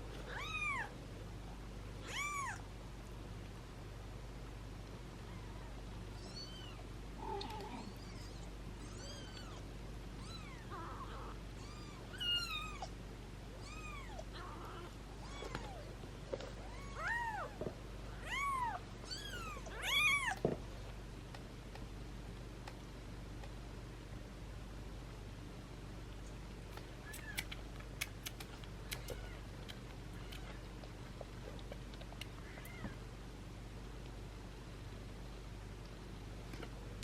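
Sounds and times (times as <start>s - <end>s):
kittens mewing: 5.3s - 13.0s.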